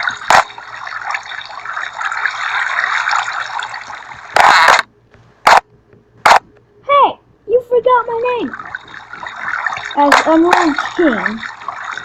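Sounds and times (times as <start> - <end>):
water running: 0.0 - 4.9, 7.9 - 12.0.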